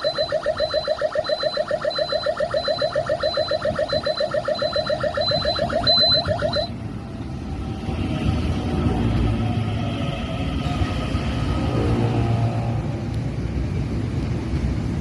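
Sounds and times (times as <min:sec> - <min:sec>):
high beep: 0:00.0 - 0:06.7
electronic warbling warning alarm: 0:00.0 - 0:06.8.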